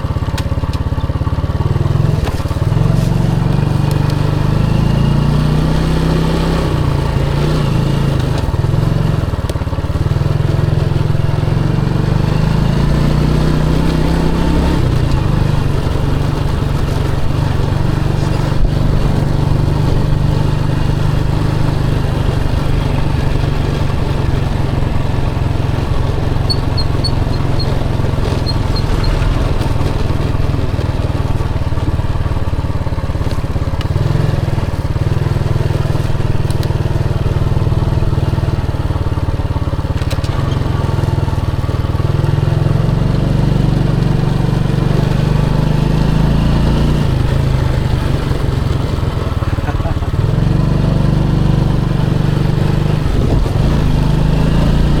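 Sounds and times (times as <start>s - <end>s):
motorcycle engine revving up: 1.6s - 32.9s, 33.8s - 55.0s.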